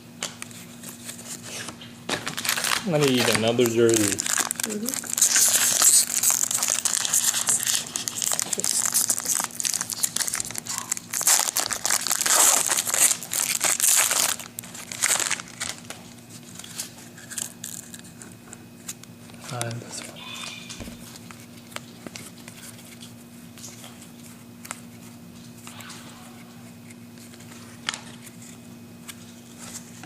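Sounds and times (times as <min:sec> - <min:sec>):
card pack wrapper crinkling: 0:02.1 - 0:24.9.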